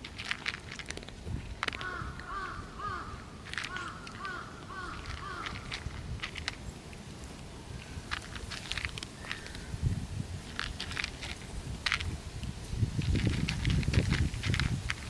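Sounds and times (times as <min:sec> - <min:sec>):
bird calling: 0:01.7 - 0:05.8, 0:09.1 - 0:09.8.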